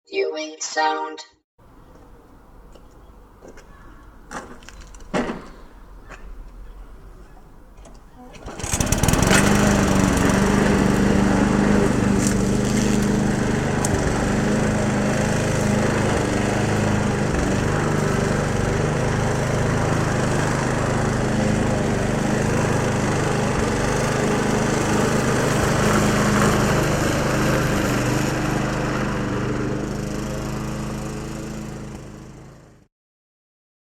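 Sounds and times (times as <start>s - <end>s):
lawnmower engine running: 7.8s - 32.8s.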